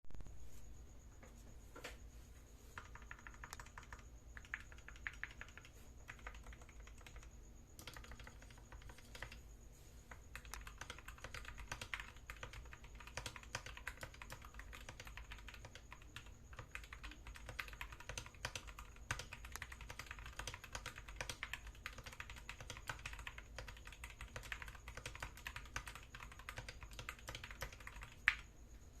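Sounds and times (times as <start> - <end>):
mechanical keyboard typing: 2.8 - 9.4, 10.1 - 28.5.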